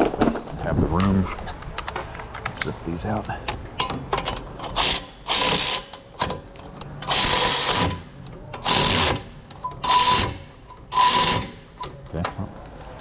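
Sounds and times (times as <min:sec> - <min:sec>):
electric ratchet whirring in bursts: 0:04.7 - 0:06.2, 0:07.0 - 0:11.8.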